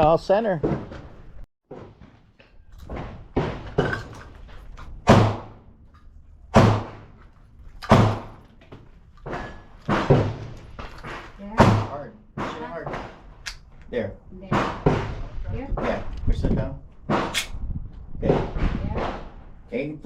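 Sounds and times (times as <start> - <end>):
gunshots with ringing tail: 5.0 - 5.6, 6.5 - 7.1, 7.9 - 8.4.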